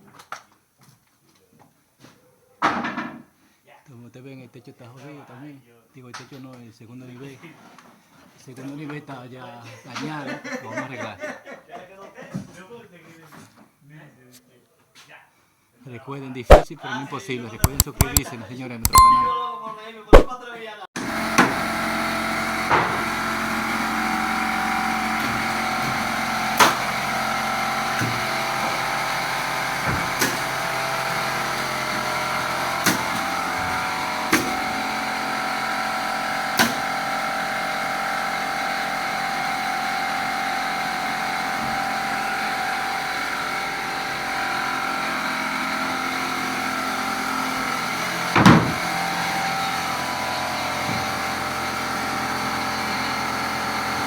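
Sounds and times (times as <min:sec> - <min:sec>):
sharp knocks or bangs: 0:16.5 - 0:16.7, 0:17.6 - 0:18.2, 0:18.9 - 0:20.4.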